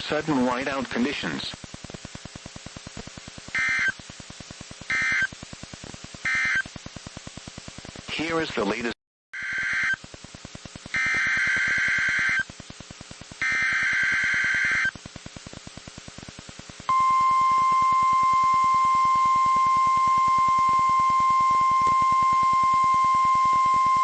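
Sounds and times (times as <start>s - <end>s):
screeching digital header bursts: 3.5s - 4.0s
steady warning alarm tone: 3.6s - 4.0s, 4.9s - 5.3s, 6.3s - 6.6s, 11.0s - 12.4s, 13.4s - 14.9s, 16.9s - 24.0s.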